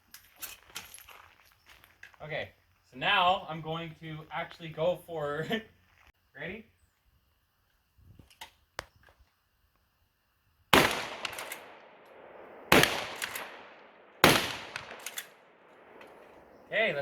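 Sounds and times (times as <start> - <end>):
shotgun blasts echoing: 10.7 - 16.5
gun handling clicks: 10.8 - 13.6, 14.2 - 16.4.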